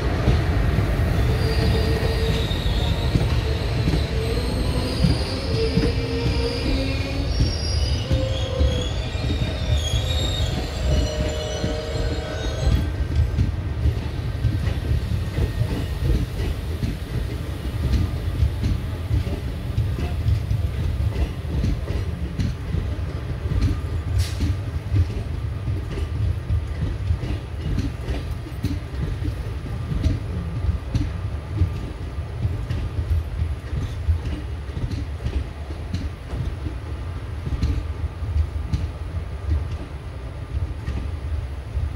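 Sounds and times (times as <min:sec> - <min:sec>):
train rumbling: 0:00.0 - 0:41.9
train wheels squealing: 0:01.1 - 0:20.3.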